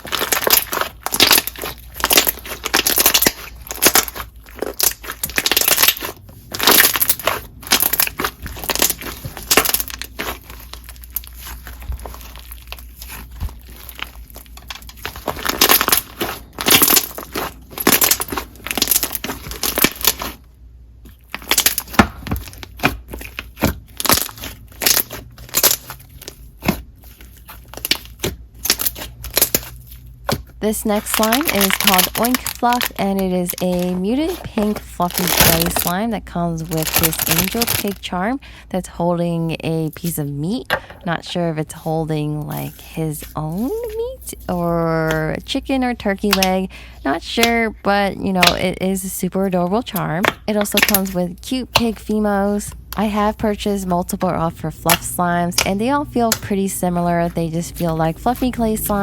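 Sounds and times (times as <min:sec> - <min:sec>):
slime wet pops and crackles: 0:00.1 - 0:20.4, 0:50.2 - 0:51.2.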